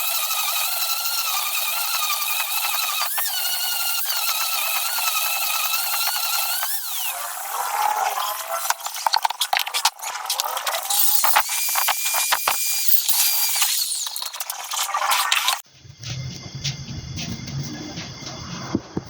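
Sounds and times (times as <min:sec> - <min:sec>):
power tool motor whining: 0:00.0 - 0:09.0.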